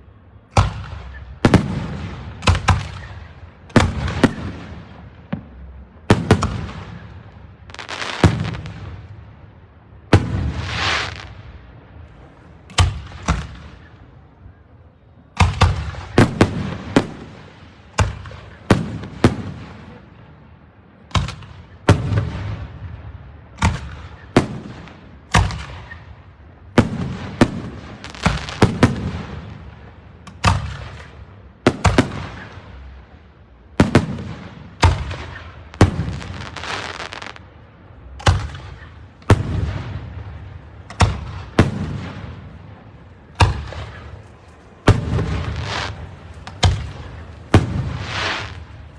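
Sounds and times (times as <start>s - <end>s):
fireworks bursting with echo: 0.1s - 48.9s
rushing firework burst: 44.9s - 48.9s.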